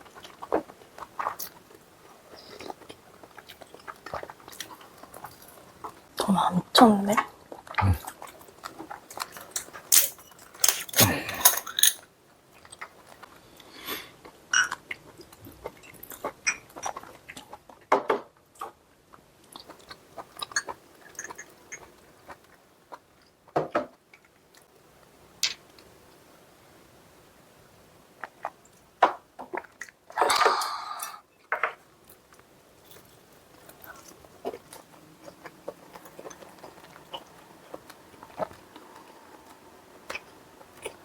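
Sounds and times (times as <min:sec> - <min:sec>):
chewing food: 0:00.0 - 0:06.2, 0:07.2 - 0:13.4, 0:14.2 - 0:17.9, 0:18.6 - 0:23.5, 0:32.0 - 0:41.0
cutlery clinking against dishes: 0:09.4 - 0:12.0.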